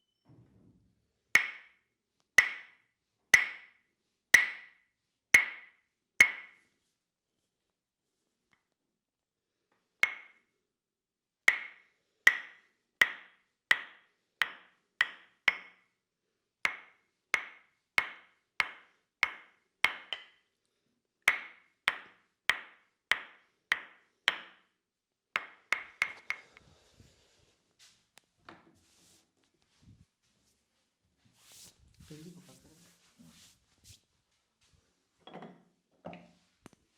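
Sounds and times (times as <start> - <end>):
wooden mallet tapping wedge: 1.4 - 1.8, 2.4 - 2.8, 3.4 - 3.8, 4.4 - 4.8, 5.4 - 6.6, 10.0 - 10.4, 11.5 - 15.8, 16.7 - 20.4, 21.3 - 24.6, 25.4 - 26.6.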